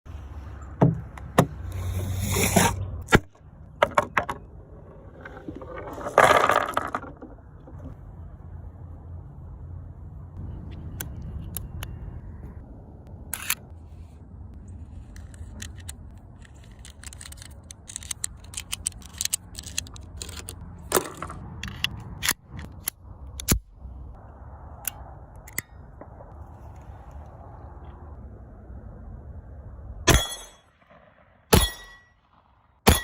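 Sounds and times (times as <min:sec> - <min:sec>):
steady background noise: 0:00.1 - 0:33.0
pistol mechanism clicking: 0:15.4 - 0:20.6.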